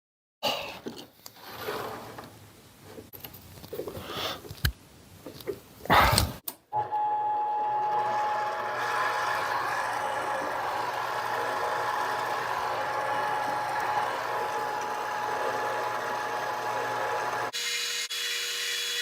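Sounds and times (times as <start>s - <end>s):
lathe motor whine: 6.8s - 19.0s.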